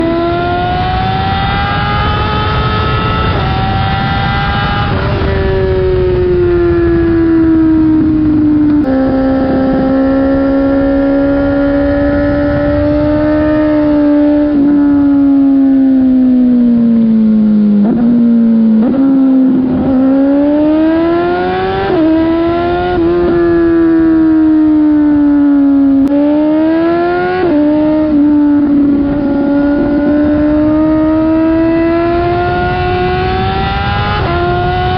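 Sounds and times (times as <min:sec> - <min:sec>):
motorcycle engine revving high: 0:00.0 - 0:34.9.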